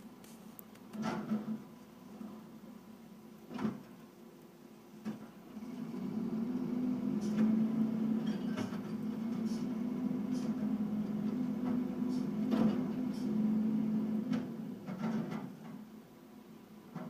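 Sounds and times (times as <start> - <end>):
truck engine low hum: 5.2 - 15.9.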